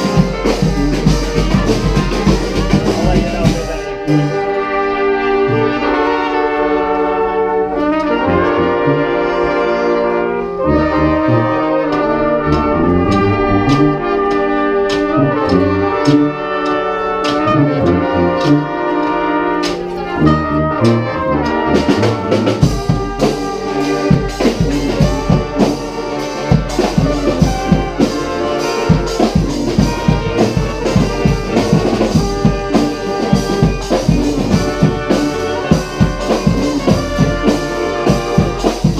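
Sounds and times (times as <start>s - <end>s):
drums beating: 0.0s - 4.5s, 11.3s - 38.9s
brass band playing: 0.0s - 38.9s.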